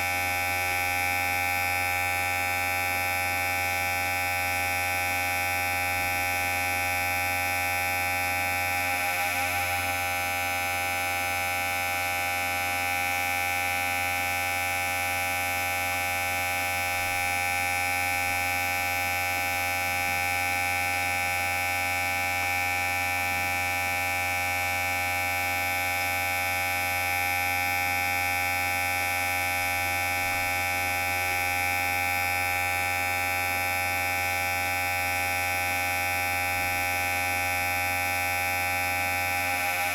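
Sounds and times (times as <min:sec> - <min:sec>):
electric hair clipper buzzing: 0:00.0 - 0:11.6, 0:24.6 - 0:39.9.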